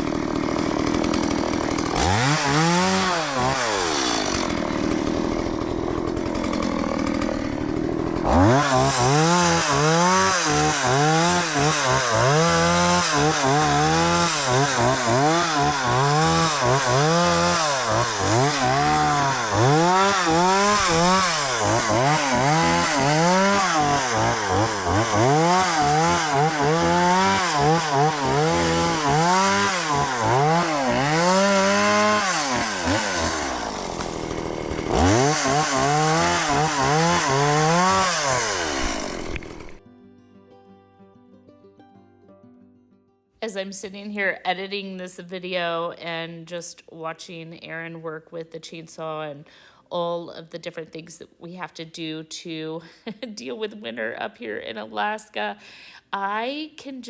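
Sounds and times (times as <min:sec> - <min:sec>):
chainsaw engine revving: 0:00.0 - 0:39.8.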